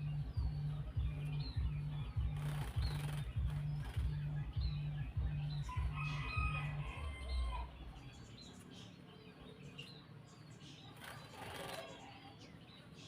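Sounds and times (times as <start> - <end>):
low rumbling thumping: 0.0 - 6.8
birds whistling: 0.0 - 13.0
rooster crowing: 5.7 - 7.7.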